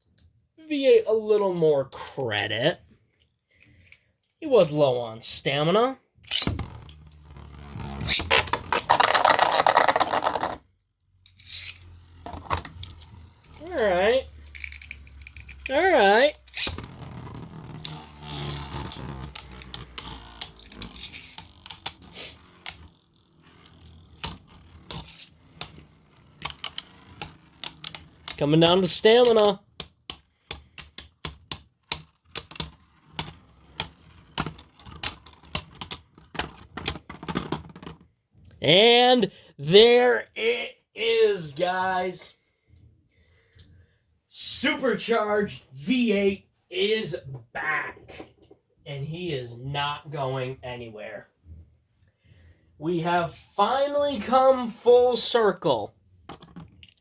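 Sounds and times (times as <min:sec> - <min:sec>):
spinning tops clashing in plastic arena: 0:06.3 - 0:10.6, 0:16.5 - 0:38.0
faint spinning rattle: 0:17.0 - 0:28.4.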